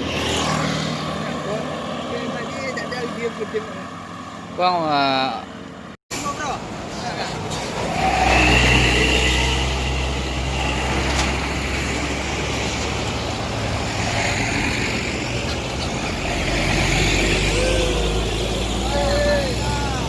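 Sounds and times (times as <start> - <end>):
tyre and road noise: 0.0 - 20.0
large vehicle engine rumbling: 5.4 - 20.0.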